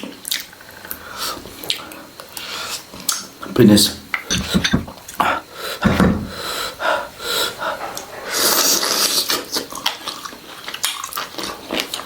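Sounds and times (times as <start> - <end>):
person breathing heavily: 0.9 - 1.6, 5.1 - 9.0
mouth noises: 4.3 - 9.0
hissing breaths through mouth: 5.1 - 9.5.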